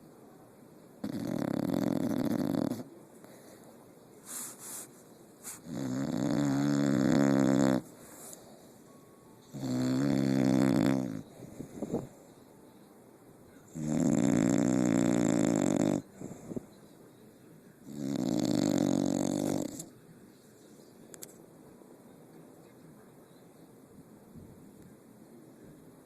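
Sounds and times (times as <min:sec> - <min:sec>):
snoring: 0:01.0 - 0:02.9, 0:05.6 - 0:07.9, 0:09.5 - 0:11.3, 0:13.7 - 0:16.6, 0:17.8 - 0:19.9
faint snuffles: 0:01.0 - 0:08.7, 0:17.9 - 0:20.0.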